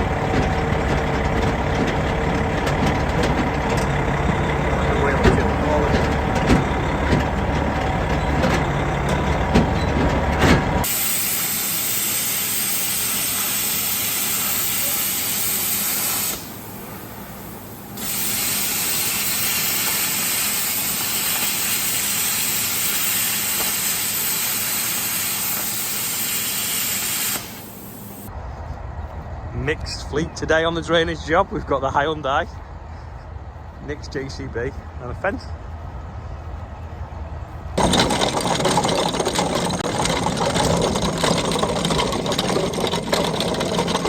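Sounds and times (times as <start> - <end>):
heavy machinery running: 0.0 - 28.3, 35.8 - 44.0
strong steady hiss: 10.9 - 28.3.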